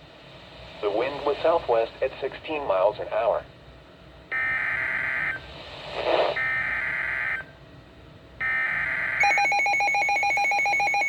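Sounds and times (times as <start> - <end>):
rapid pulsing alert beep: 9.2 - 11.0.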